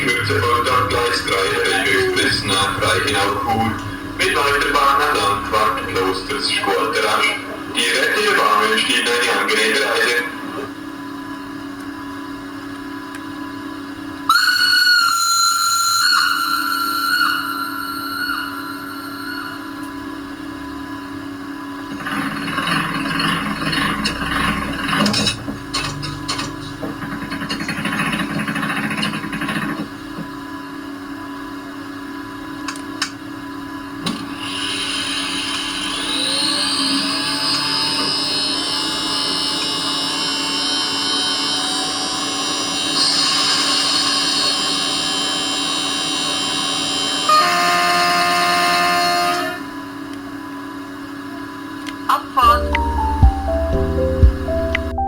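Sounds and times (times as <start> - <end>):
low electric hum: 0.0 - 9.6, 52.4 - 55.0
electrical hum: 0.0 - 14.3, 16.0 - 43.0
locomotive traction drive whine: 0.0 - 47.8
loud high horn tone: 47.3 - 49.8.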